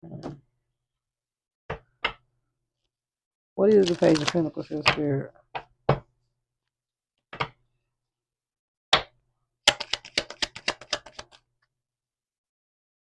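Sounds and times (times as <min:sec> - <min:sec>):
cards shuffling and slapping: 0:03.7 - 0:05.1, 0:09.7 - 0:11.4
cards snapping: 0:09.7 - 0:11.4.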